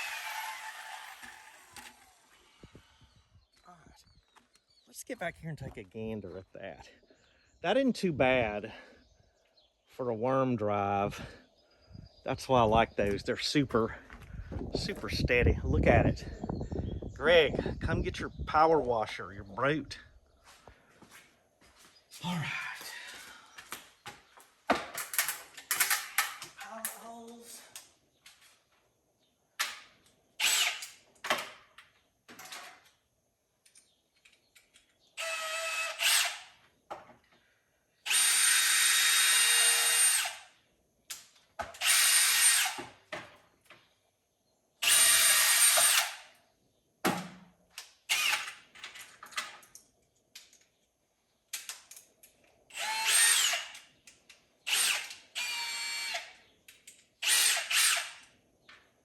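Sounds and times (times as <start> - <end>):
power drill whining: 0.0 - 3.2, 30.4 - 30.9, 35.2 - 36.5, 38.0 - 40.5, 41.8 - 42.9, 44.8 - 46.2, 48.1 - 48.6, 52.7 - 53.8, 54.7 - 56.4, 57.2 - 58.2.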